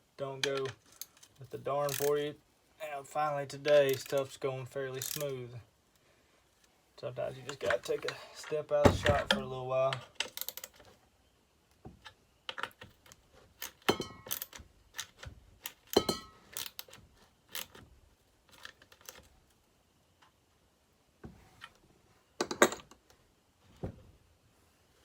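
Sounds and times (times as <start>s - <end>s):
metal tools clicking and clinking: 0.4s - 2.2s, 4.9s - 5.3s, 13.6s - 17.8s.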